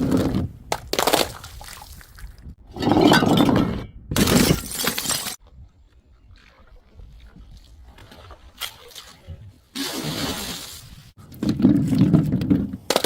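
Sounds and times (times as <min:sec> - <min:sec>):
glass bottles shattering: 0:02.8 - 0:03.6.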